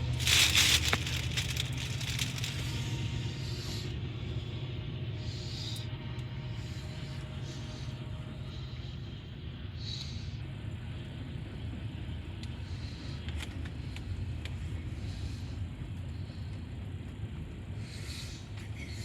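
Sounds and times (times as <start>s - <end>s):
freight cars rumbling on rails: 0.0s - 19.0s
clanking and rattling: 0.1s - 2.6s.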